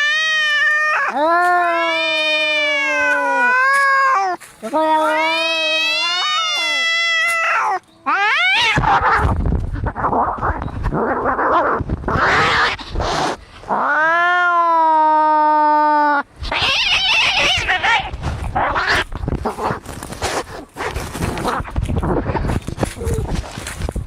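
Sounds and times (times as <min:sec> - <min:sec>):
cats yowling and screeching: 0:00.0 - 0:19.8
scuffling: 0:00.6 - 0:07.8, 0:17.6 - 0:24.0.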